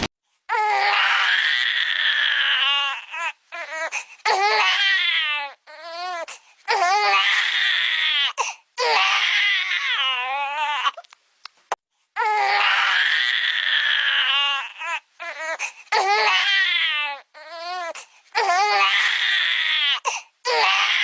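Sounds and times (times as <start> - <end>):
baby crying: 0.5 - 11.1, 12.2 - 21.0.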